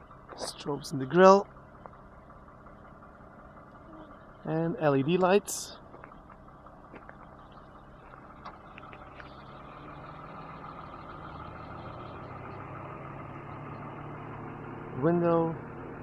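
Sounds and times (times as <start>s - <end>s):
vehicle engine idling: 0.0s - 16.0s.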